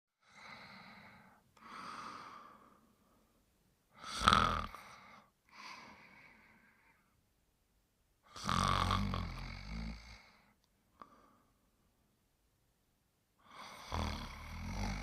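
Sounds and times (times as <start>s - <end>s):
person snoring: 4.0s - 6.4s, 8.3s - 11.3s, 13.4s - 15.0s.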